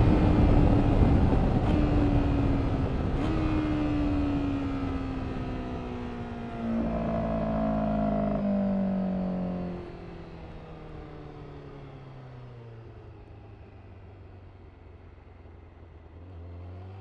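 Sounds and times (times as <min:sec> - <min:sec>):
motorcycle engine: 0:00.0 - 0:12.0.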